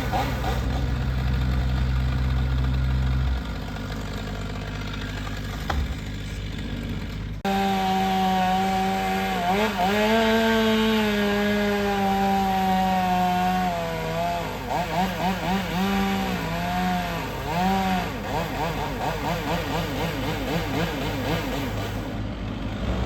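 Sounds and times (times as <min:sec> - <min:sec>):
engine idling: 0:00.0 - 0:07.5
chainsaw cutting wood: 0:00.0 - 0:23.0.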